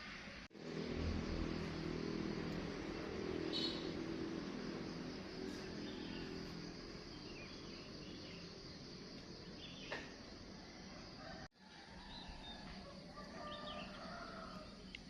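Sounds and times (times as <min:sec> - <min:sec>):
insect trilling: 0:01.0 - 0:10.0.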